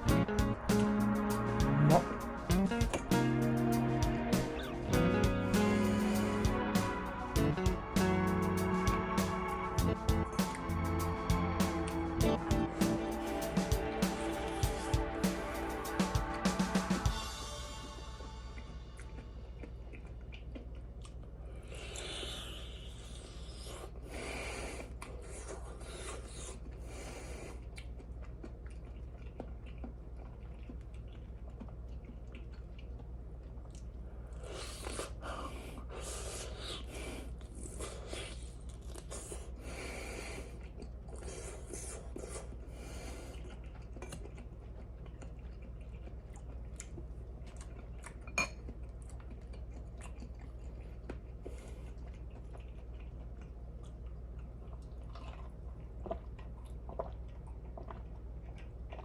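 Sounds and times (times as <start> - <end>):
person chewing food: 0.0 - 59.0
steady low hum: 0.0 - 59.0.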